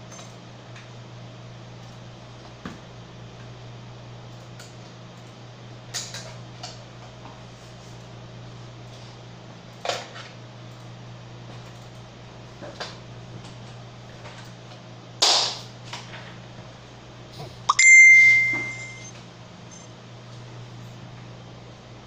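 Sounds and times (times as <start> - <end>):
bell-like ding: 17.7 - 19.1.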